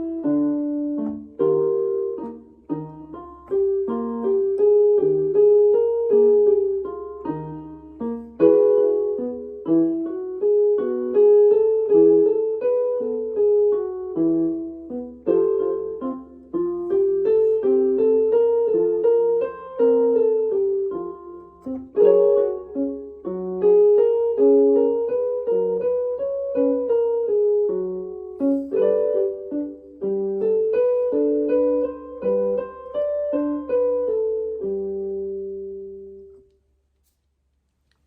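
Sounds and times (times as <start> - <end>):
piano notes: 0.0 - 36.9.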